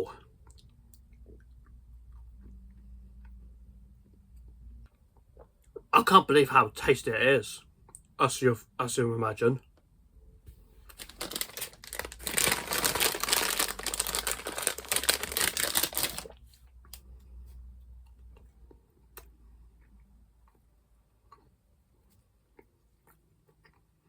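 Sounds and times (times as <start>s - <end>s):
plastic packet crinkling: 10.8s - 16.4s.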